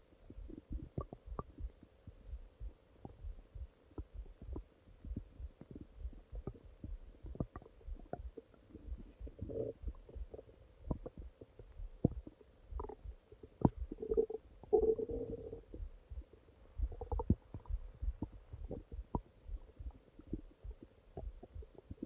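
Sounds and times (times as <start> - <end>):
stomach growling: 0.0 - 22.0.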